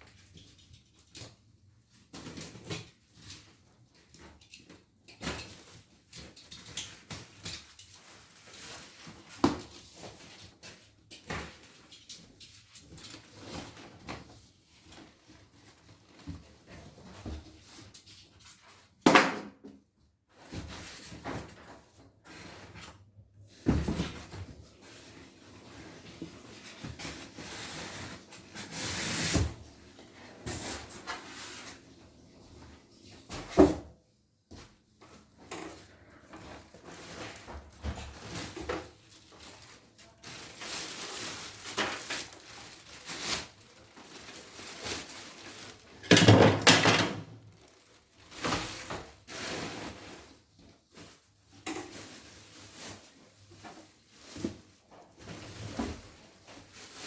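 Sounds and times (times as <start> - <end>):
tools and parts being handled: 38.0 - 49.0.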